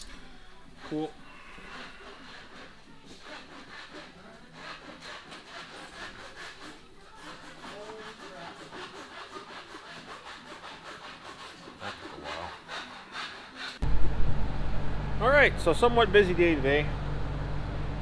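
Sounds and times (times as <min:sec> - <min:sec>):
tool rasping on a surface: 0:00.8 - 0:13.8.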